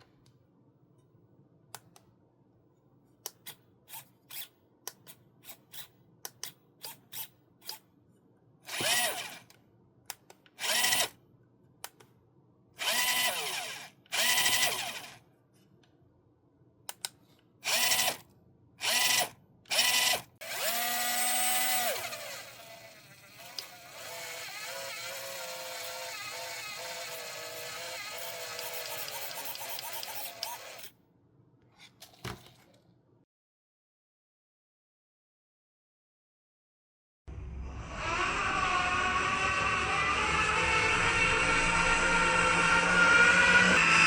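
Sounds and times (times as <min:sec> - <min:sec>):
electric toy car motor whining: 0:12.8 - 0:15.2, 0:18.8 - 0:30.9, 0:37.8 - 0:44.0.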